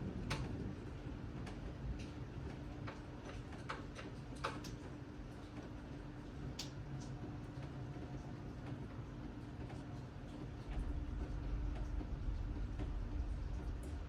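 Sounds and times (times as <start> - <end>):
low steady rumble: 0.0 - 3.3, 7.2 - 14.0.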